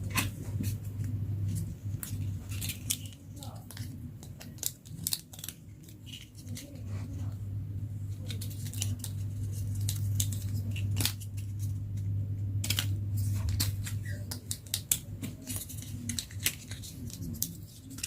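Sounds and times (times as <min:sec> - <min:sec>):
steady low hum: 0:00.0 - 0:18.0.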